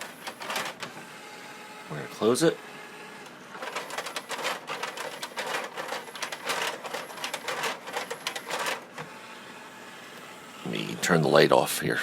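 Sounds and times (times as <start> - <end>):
disc tray mechanism clicking: 3.2 - 9.2.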